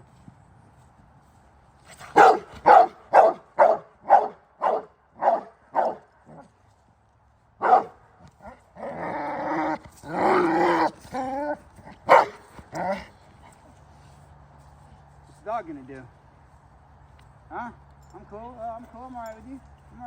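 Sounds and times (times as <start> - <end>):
dog barking: 2.1 - 6.0, 7.6 - 8.0, 12.1 - 13.0.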